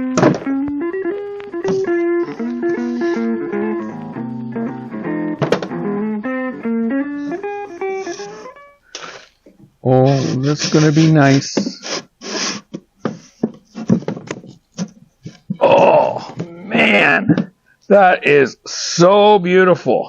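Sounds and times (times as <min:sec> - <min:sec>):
guitar melody with percussion: 0:00.0 - 0:10.4, 0:13.3 - 0:17.6.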